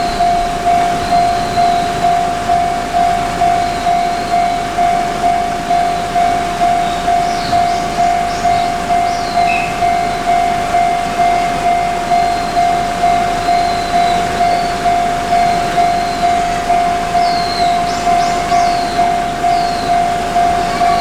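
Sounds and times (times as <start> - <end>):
level crossing bell ringing: 0.0 - 21.0
faint high squeals: 15.9 - 21.0.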